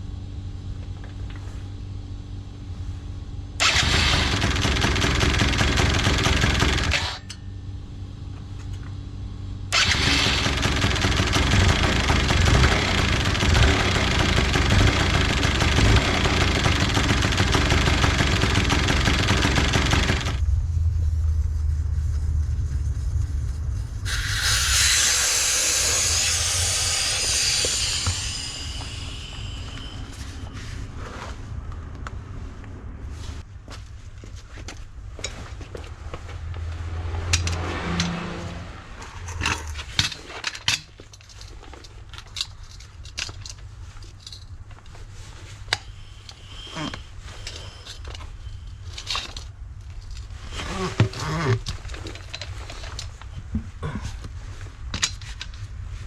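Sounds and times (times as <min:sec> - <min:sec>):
scooter engine idling and revving: 0:09.6 - 0:24.7
high-pitched noise burst: 0:24.0 - 0:30.6.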